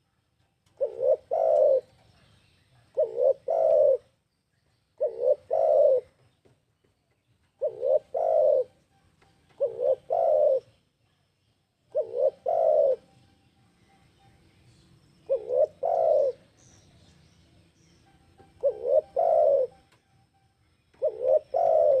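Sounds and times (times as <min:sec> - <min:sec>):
faint high bird chirps: 0:00.1 - 0:22.0
dove cooing: 0:00.6 - 0:02.1, 0:02.8 - 0:04.1, 0:05.0 - 0:06.2, 0:07.6 - 0:08.8, 0:09.5 - 0:10.8, 0:11.9 - 0:13.2, 0:15.2 - 0:16.8, 0:18.4 - 0:19.9, 0:20.9 - 0:22.0.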